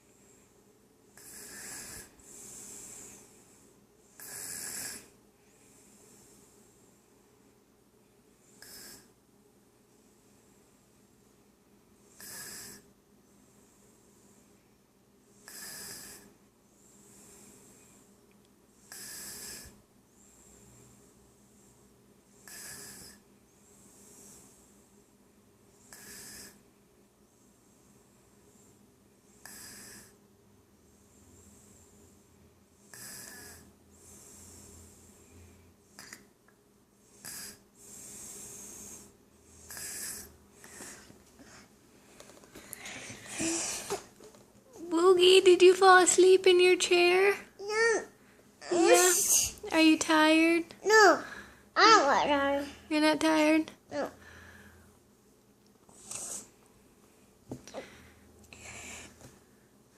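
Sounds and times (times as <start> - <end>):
soft breathing: 0.0 - 7.7, 12.0 - 18.2, 18.8 - 25.0, 30.8 - 36.3, 37.0 - 44.9, 50.8 - 51.8, 53.9 - 55.0, 55.9 - 59.8
toddler snoring: 1.1 - 3.4, 4.1 - 5.2, 8.5 - 9.2, 12.1 - 12.9, 15.4 - 16.4, 18.8 - 20.9, 22.4 - 24.6, 25.8 - 26.7, 28.4 - 30.2, 32.9 - 35.0, 35.9 - 36.4, 37.1 - 41.7, 42.8 - 45.0, 47.6 - 49.7, 53.9 - 54.2, 55.9 - 56.5.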